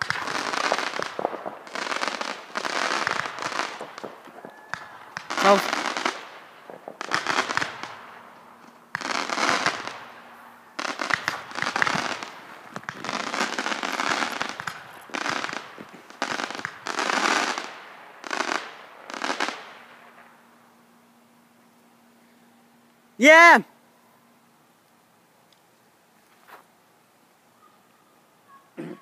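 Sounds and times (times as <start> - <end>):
fireworks popping: 0.0 - 20.4.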